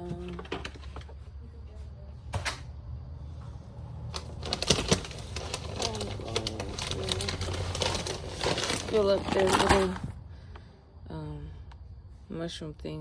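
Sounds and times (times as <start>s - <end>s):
plastic containers clattering: 0.0s - 1.2s, 4.1s - 10.1s.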